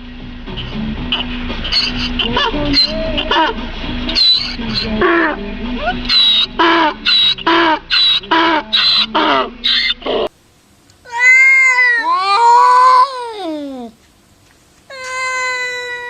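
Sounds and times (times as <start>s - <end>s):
cat yowling: 2.2s - 3.5s, 11.0s - 14.0s, 14.9s - 16.0s
animal short pitched cries: 11.1s - 13.9s, 14.9s - 16.0s.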